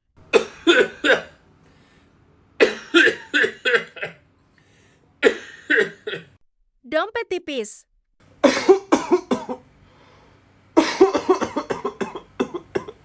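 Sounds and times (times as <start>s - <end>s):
person coughing: 0.3s - 1.4s, 2.6s - 4.2s, 5.2s - 6.4s, 8.4s - 9.6s, 10.8s - 13.0s.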